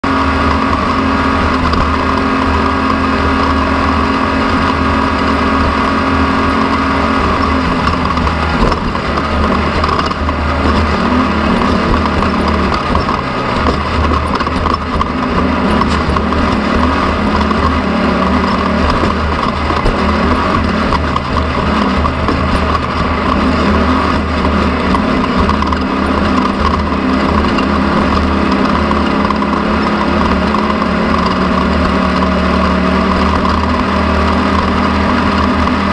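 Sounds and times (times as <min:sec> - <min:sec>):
engine running under load: 0:00.0 - 0:35.9.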